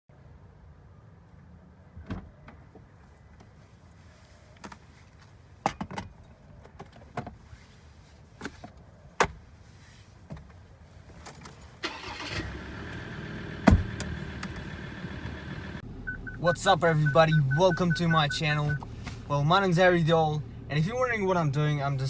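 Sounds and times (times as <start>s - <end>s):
car engine starting and running: 11.8s - 22.0s.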